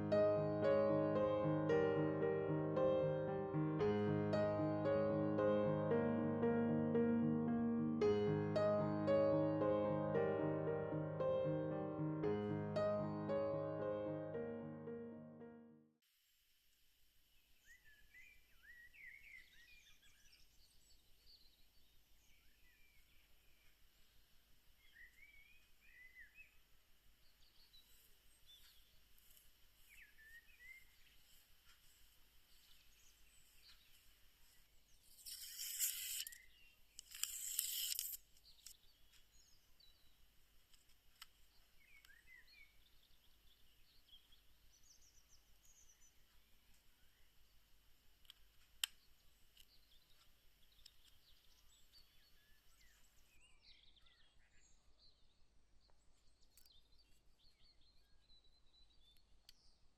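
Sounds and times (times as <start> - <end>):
background hiss: 0.0 - 21.4
faint bird chirps: 17.3 - 29.0, 29.8 - 31.4.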